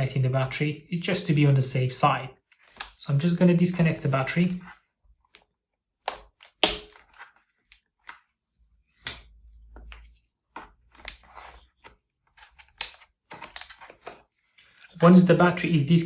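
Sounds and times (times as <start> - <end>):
handling scrapes: 9.5 - 15.0.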